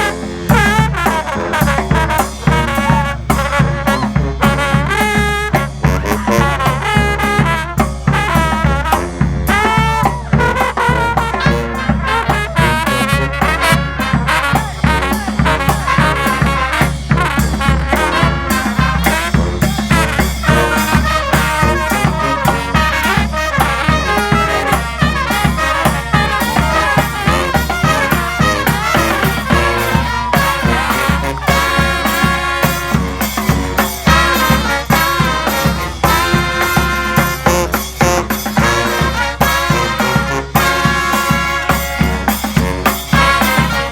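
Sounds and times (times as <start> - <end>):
steady drum beat: 0.0 - 43.9
street brass band playing: 0.0 - 43.9
trombones: 0.0 - 43.9
trumpets: 0.0 - 43.9.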